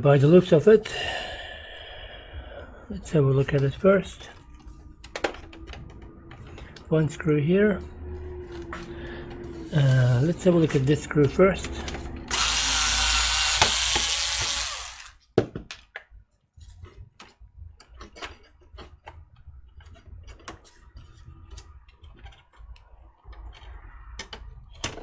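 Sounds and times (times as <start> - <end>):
powered screwdriver running: 12.3 - 15.2.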